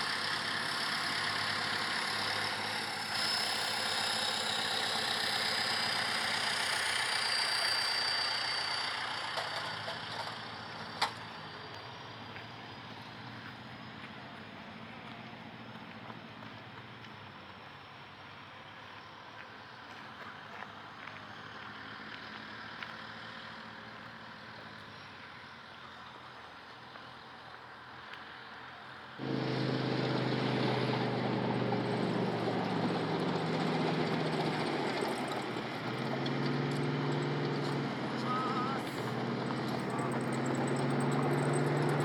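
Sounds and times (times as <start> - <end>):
heavy diesel engine running: 0.0 - 16.6, 29.1 - 42.0.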